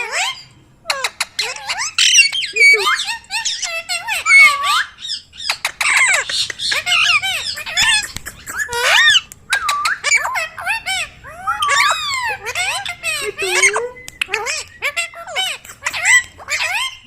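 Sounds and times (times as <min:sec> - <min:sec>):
parakeet squawking and chattering: 0:00.0 - 0:17.0.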